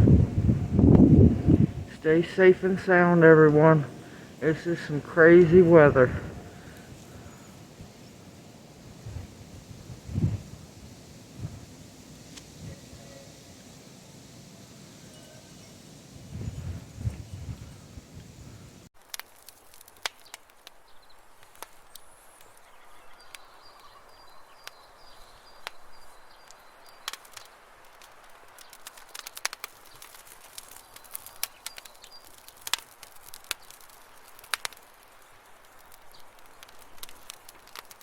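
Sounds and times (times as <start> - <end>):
faint outdoor hiss: 0.0 - 38.0
sharp clicks and crackles: 19.0 - 23.9, 26.4 - 38.0.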